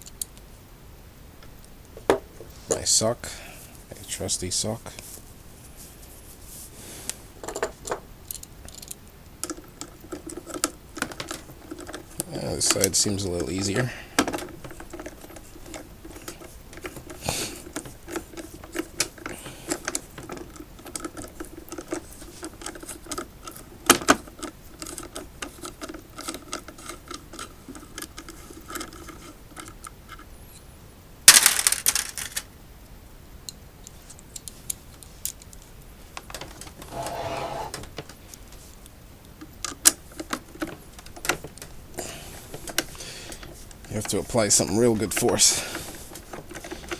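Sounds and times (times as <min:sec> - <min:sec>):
tools clicking and rattling on plastic: 0:07.4 - 0:30.3, 0:36.2 - 0:37.1, 0:39.4 - 0:46.9
scrape or clatter: 0:36.8 - 0:37.8.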